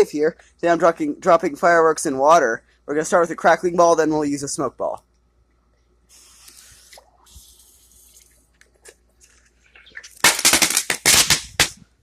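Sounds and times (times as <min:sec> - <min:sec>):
firework hissing: 0:06.1 - 0:08.2, 0:10.2 - 0:11.7
firework crackling pops: 0:10.1 - 0:11.8.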